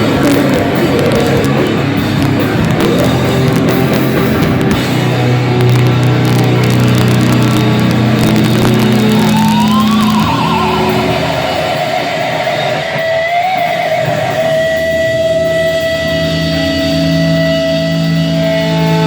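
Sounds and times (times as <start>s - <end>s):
low droning note: 0.0s - 13.3s
electric guitar feedback: 0.0s - 19.0s.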